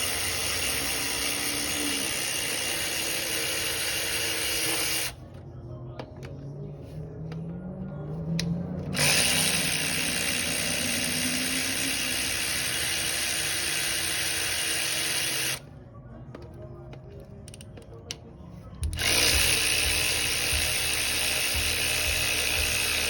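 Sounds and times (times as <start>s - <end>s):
power tool running: 0.0s - 5.2s, 8.4s - 15.6s, 18.8s - 23.0s.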